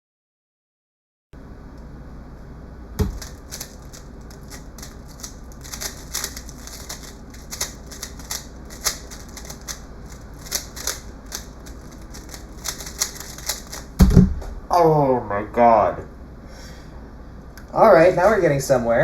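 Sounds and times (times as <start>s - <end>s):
puzzle cube plastic clicks: 3.0s - 13.9s
thump: 14.0s - 14.6s.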